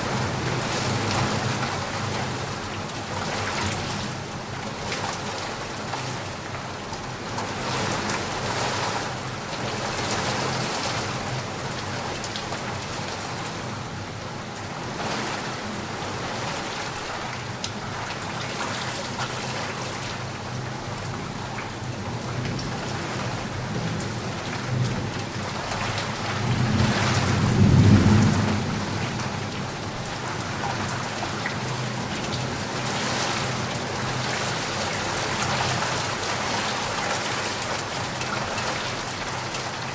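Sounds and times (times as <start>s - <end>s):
rain falling: 0.0s - 39.9s
thunder rumble: 26.1s - 30.4s.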